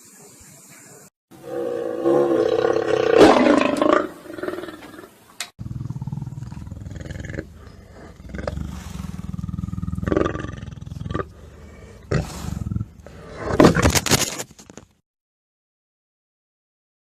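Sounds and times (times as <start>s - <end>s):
big cat roaring: 1.4s - 13.8s.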